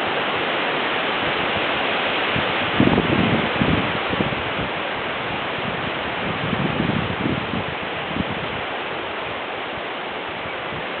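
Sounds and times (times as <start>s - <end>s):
wind rushing through leaves: 0.0s - 11.0s
low gusty rumbles: 2.3s - 11.0s.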